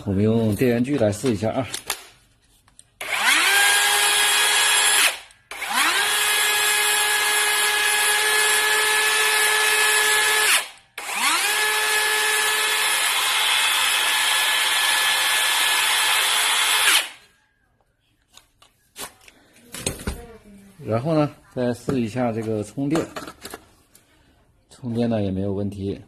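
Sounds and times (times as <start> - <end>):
circular saw motor whining: 3.0 - 17.2.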